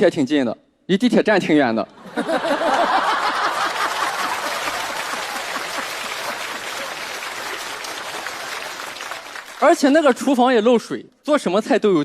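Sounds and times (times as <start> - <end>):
studio audience laughing: 1.9 - 8.9
audience applauding: 2.1 - 10.1.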